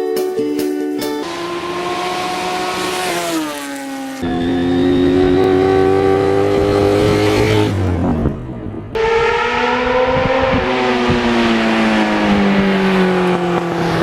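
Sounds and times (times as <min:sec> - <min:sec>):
motorcycle engine running: 0:01.2 - 0:08.8.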